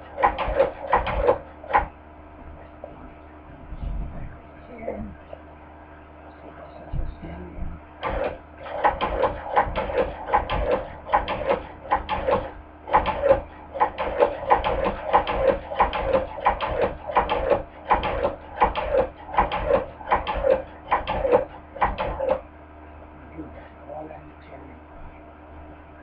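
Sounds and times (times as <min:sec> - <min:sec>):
sewing machine clacking: 0:00.0 - 0:01.9, 0:08.0 - 0:22.4.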